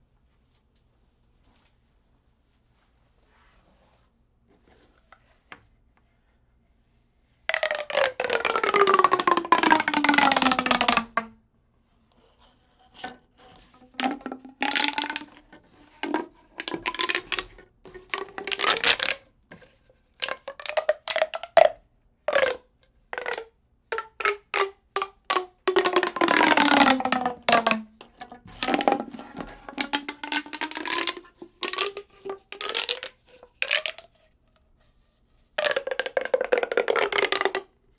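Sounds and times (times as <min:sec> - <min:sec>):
expanding tube crackling clicks: 0:07.6 - 0:11.3, 0:14.0 - 0:15.3, 0:16.0 - 0:17.5, 0:24.2 - 0:34.0.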